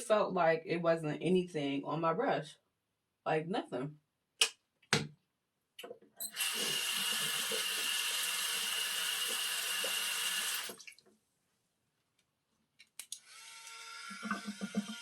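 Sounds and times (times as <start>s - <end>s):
sink tap running: 6.2s - 10.8s, 13.6s - 15.0s.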